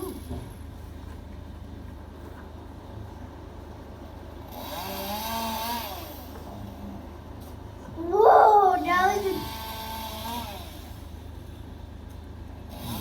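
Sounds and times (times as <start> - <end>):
chainsaw revving: 4.5 - 6.4, 8.9 - 11.0, 12.7 - 13.0.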